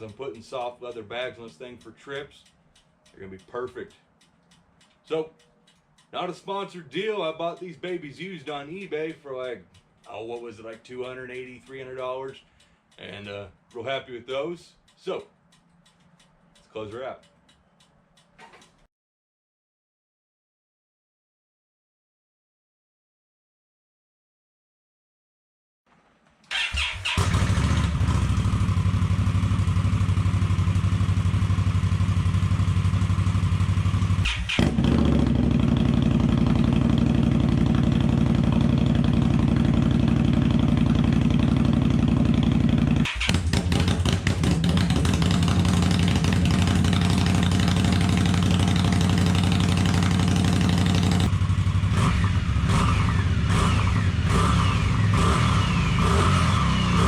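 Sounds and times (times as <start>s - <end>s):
motorcycle exhaust note: 27.2s - 57.0s.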